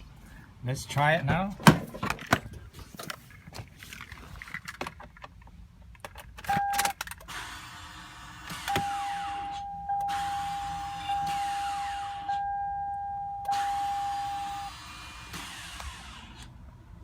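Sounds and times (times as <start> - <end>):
short beep: 6.5 - 6.9, 8.7 - 11.5, 12.2 - 14.7
steady electronic tone: 8.7 - 14.7.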